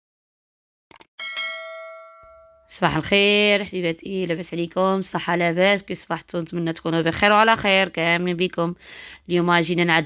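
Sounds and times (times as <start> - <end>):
bell chime ringing: 1.2 - 2.7.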